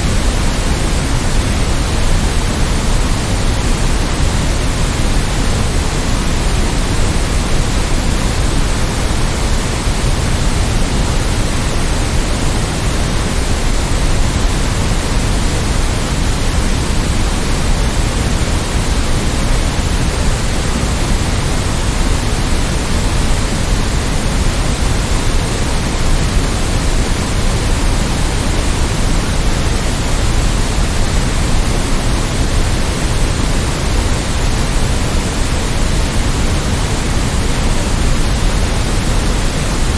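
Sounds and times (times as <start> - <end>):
white noise hiss: 0.0 - 39.9.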